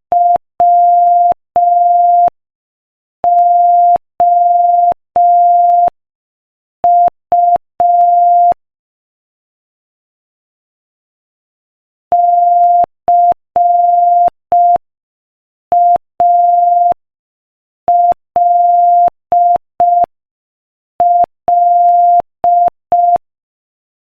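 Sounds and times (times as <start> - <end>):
morse code beeps: 0.1 - 2.3, 3.3 - 5.9, 6.9 - 8.6, 12.2 - 14.8, 21.0 - 23.2.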